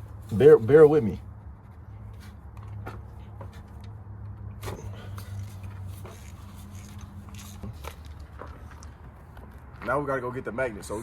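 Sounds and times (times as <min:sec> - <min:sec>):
hand tools clicking and scraping: 0:01.5 - 0:09.9.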